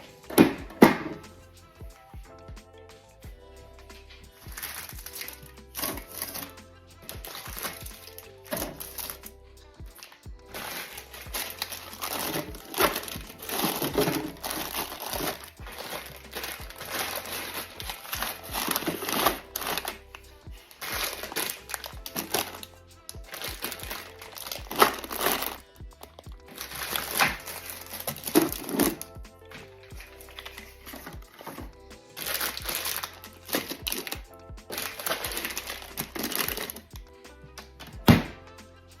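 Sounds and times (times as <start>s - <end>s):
background music: 0.0s - 39.0s
plastic packaging crinkling: 4.4s - 9.2s, 10.0s - 29.1s, 29.9s - 36.8s.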